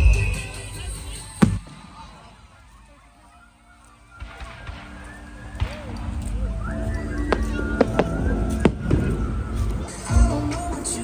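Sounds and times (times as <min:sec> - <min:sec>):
fireworks booms: 0:00.0 - 0:02.8, 0:04.1 - 0:10.8
music playing: 0:00.0 - 0:11.0
fireworks sharp bang: 0:00.8 - 0:02.6, 0:04.1 - 0:10.4.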